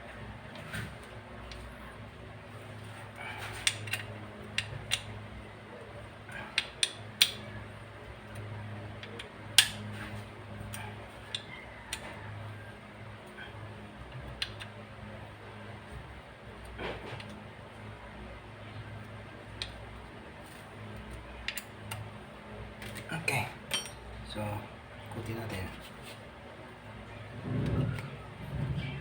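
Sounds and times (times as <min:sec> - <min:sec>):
steady low hum: 0:00.0 - 0:29.0
metal tools clinking: 0:23.7 - 0:24.1.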